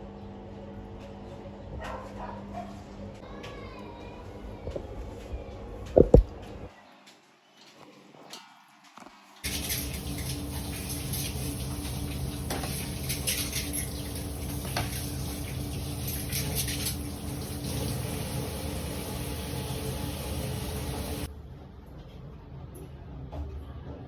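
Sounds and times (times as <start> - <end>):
tap water running into sink: 9.4 - 21.3.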